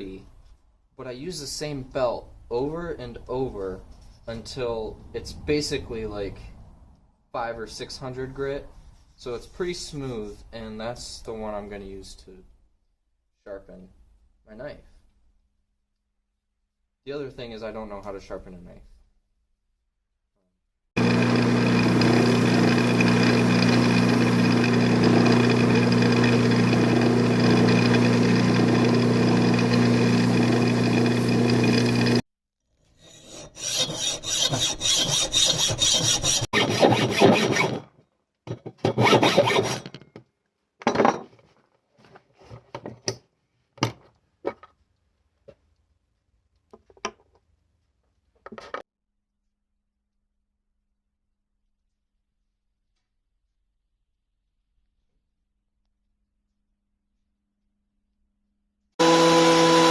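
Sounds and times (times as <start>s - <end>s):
belt grinder running: 21.0s - 32.2s, 33.6s - 37.8s, 38.9s - 39.8s, 59.0s - 59.9s
rough rasping strokes: 33.0s - 37.9s, 38.9s - 39.9s.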